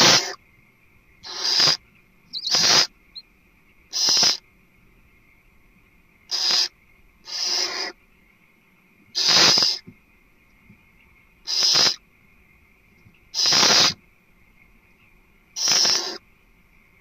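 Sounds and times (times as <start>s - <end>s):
owl hissing calls: 0.0s - 0.4s, 1.2s - 3.2s, 3.9s - 4.4s, 6.3s - 8.0s, 9.1s - 9.9s, 11.4s - 12.0s, 13.3s - 14.0s, 15.6s - 16.2s.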